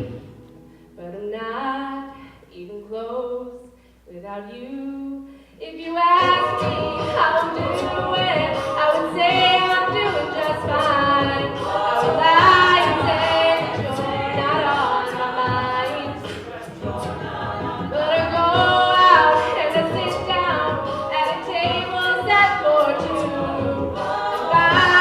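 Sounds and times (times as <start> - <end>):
voices singing in harmony: 5.9 - 25.0.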